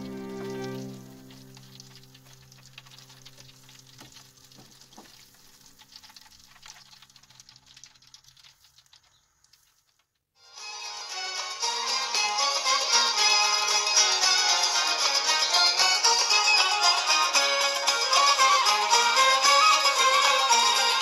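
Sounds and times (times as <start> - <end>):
faint background music: 0.0 - 4.8
food sizzling in hot oil: 0.0 - 21.0.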